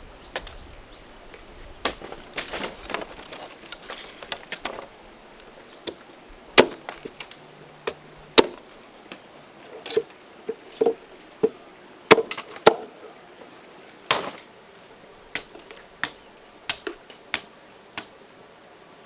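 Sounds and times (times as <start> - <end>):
chopping on wood: 6.6 - 7.2, 7.9 - 8.6, 10.8 - 12.9, 14.1 - 14.5, 15.3 - 18.2.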